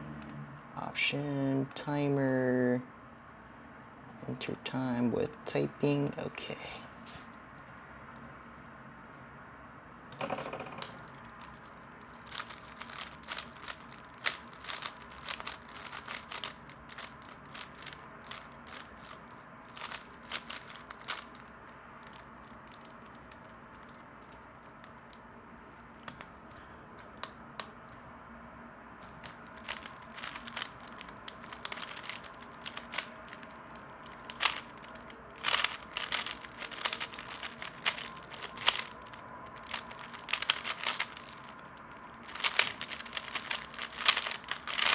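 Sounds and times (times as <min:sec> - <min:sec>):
speedcube clicking: 0:10.2 - 0:25.0, 0:29.2 - 0:44.9.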